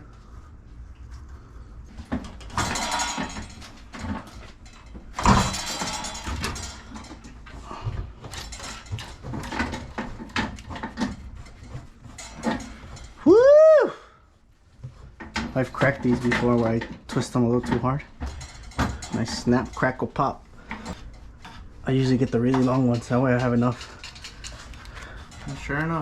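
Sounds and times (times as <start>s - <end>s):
plumbing parts clicking and knocking: 1.9s - 13.2s, 14.8s - 26.0s.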